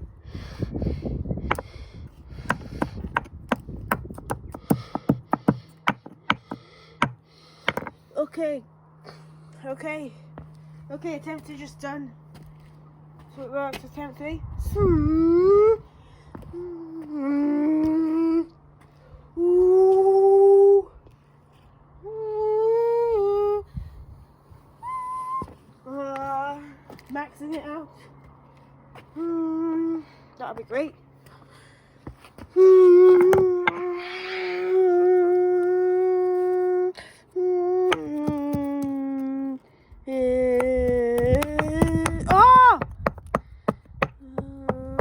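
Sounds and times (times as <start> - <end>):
low steady hum: 0.0 - 45.0
person humming long notes: 16.5 - 18.6, 19.3 - 21.0, 22.0 - 23.7, 29.2 - 30.1, 32.5 - 42.3.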